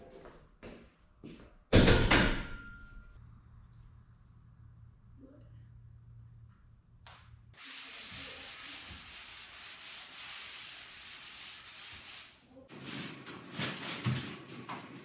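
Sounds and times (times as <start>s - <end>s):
paint roller rubbing on wall: 7.6s - 15.0s.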